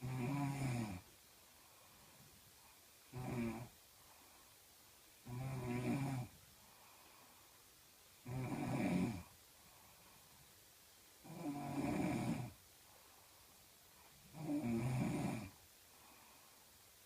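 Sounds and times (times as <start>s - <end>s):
woman snoring: 0.0s - 1.1s, 3.1s - 3.8s, 5.2s - 6.3s, 8.2s - 9.3s, 11.2s - 12.6s, 14.3s - 15.6s
quiet breathing: 0.0s - 17.0s.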